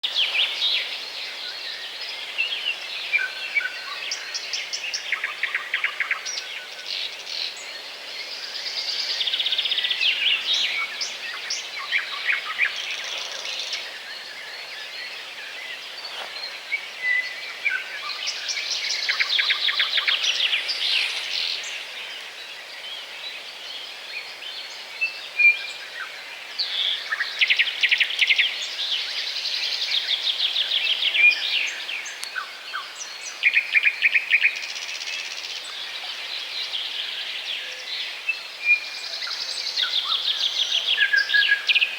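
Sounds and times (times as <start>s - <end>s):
background hiss: 0.0s - 41.9s
songbirds chirping and trilling: 0.0s - 41.9s.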